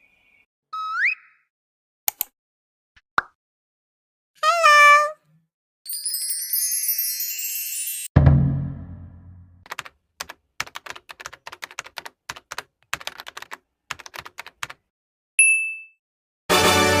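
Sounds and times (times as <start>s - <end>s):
loud low ringing thud: 8.2s - 9.5s
keyboard typing: 9.6s - 14.9s
short high ding: 15.4s - 16.0s.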